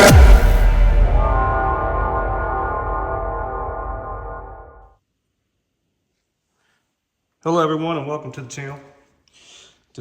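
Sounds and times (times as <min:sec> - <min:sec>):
electronic music with bass drop: 0:00.0 - 0:04.8.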